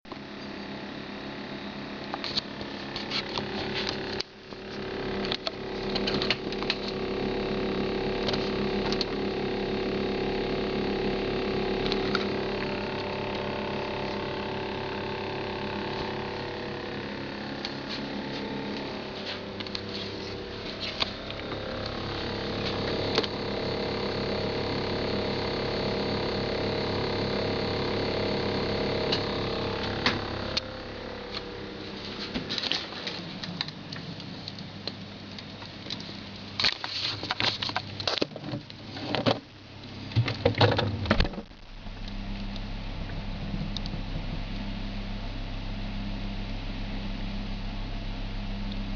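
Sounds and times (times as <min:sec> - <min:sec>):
refrigerator humming: 0:00.1 - 0:48.9
irregular clicks and crackles: 0:02.1 - 0:07.0, 0:31.3 - 0:44.0.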